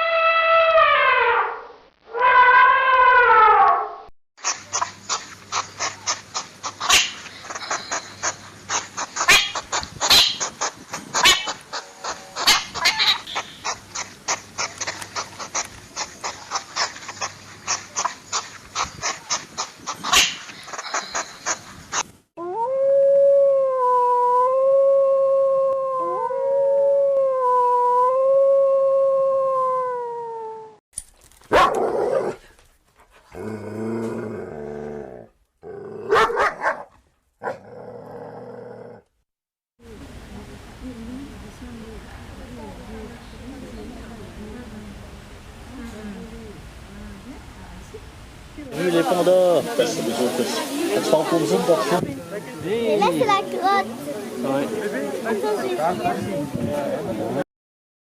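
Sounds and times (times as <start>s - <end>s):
dog howling: 22.4s - 30.8s.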